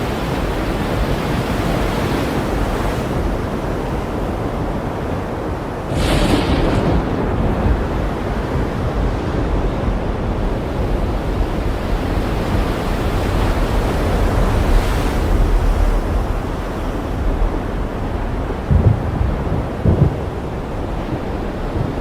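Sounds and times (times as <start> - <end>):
ocean surf washing in: 0.0 - 22.0
deep low rumble: 17.5 - 20.7.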